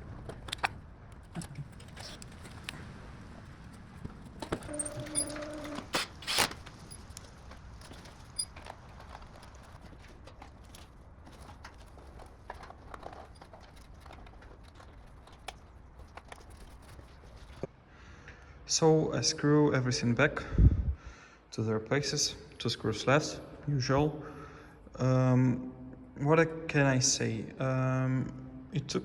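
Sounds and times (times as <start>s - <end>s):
clicks of screws and hand tool: 0.1s - 2.8s, 4.2s - 17.7s
brief steady tone: 4.7s - 5.8s.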